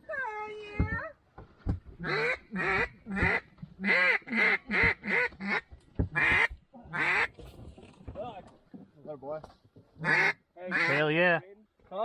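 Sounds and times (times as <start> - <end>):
duck call quacks: 2.0 - 5.6, 6.2 - 7.3, 10.0 - 11.1.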